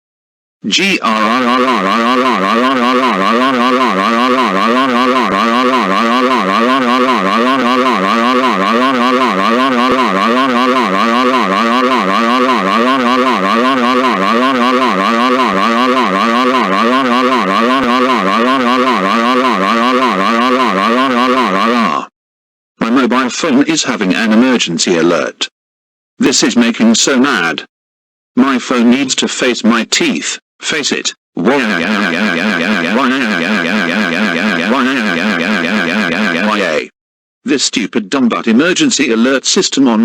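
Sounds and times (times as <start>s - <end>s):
phone emergency alert tone: 1.1s - 22.1s, 31.5s - 36.9s.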